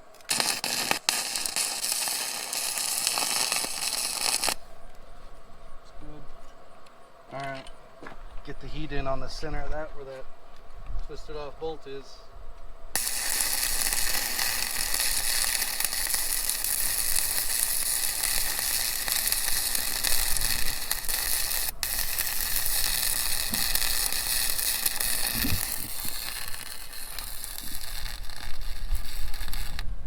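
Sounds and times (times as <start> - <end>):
welding arc crackling: 0.0 - 4.6, 13.0 - 30.0.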